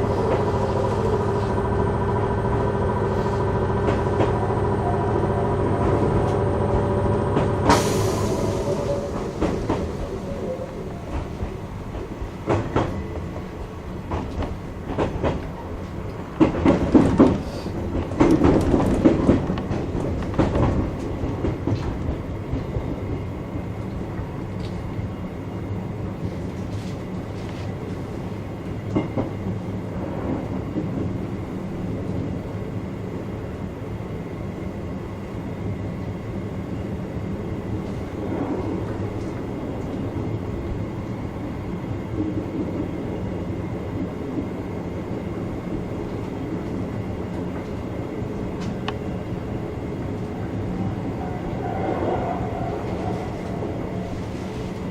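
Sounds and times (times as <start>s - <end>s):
train running rumble: 0.0s - 54.9s
wheels clacking over rail joints: 8.8s - 22.9s.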